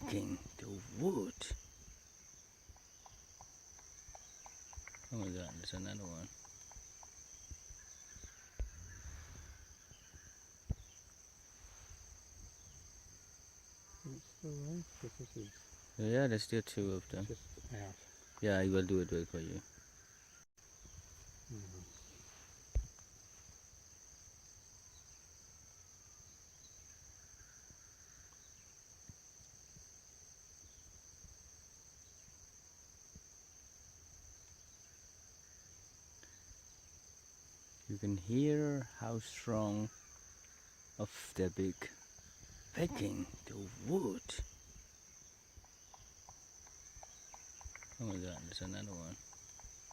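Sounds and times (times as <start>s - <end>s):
high-pitched insect drone: 0.0s - 19.8s, 37.9s - 49.9s
woodpecker pecking wood: 2.7s - 8.8s, 45.6s - 49.9s.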